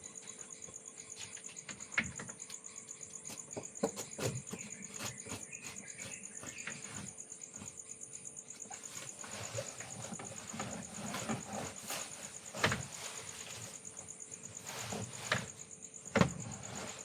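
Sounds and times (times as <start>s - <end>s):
insects trilling: 0.0s - 17.0s
knocks and light clatter: 0.6s - 7.0s.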